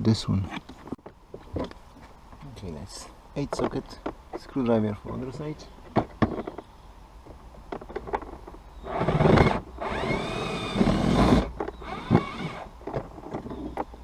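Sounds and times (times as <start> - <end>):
electric screwdriver whirring: 8.9 - 12.7.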